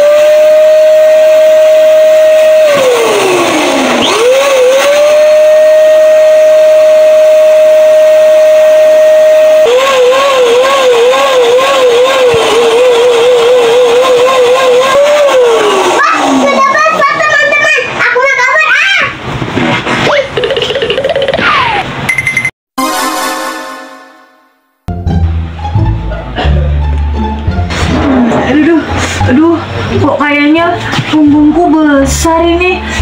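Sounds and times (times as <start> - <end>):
loud whistling tone: 3.9 - 11.8.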